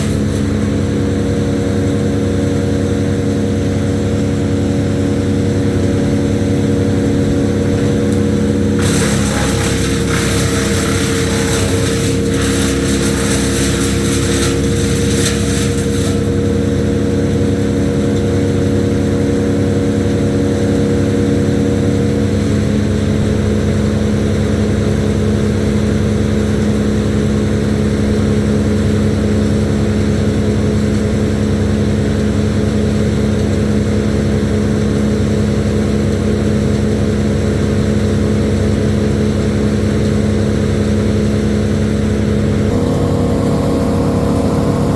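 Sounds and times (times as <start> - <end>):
engine running steadily: 0.0 - 44.9
harsh high hiss: 8.8 - 16.4.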